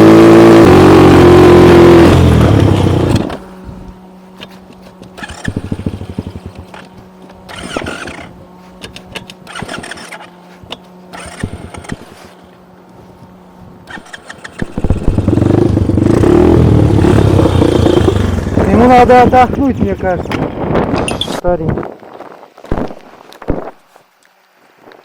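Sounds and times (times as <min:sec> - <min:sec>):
rattly engine bursts: 0:00.0 - 0:03.6, 0:04.4 - 0:12.5, 0:13.8 - 0:19.5
small engine idling and revving: 0:00.0 - 0:21.2.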